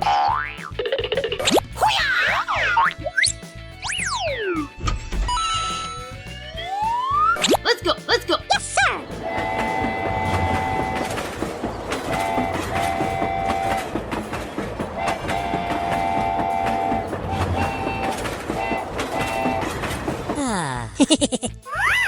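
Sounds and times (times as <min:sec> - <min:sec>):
train wheels clattering over rails: 0:09.0 - 0:20.4
two-tone train horn: 0:09.2 - 0:20.2.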